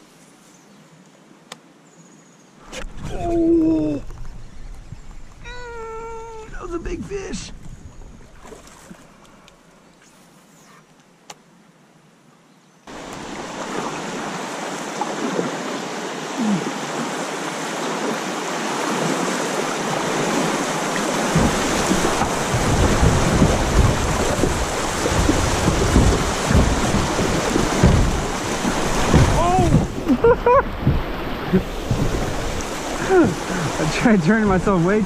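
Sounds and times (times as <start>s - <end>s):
rushing splashing river water: 2.6s - 9.3s, 12.9s - 35.0s
heavy low rumbling buffets: 2.8s - 8.4s, 20.9s - 35.0s.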